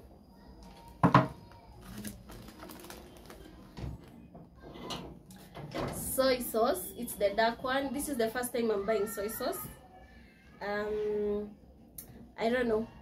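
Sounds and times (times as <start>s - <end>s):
groceries knocking on surface: 1.0s - 4.5s.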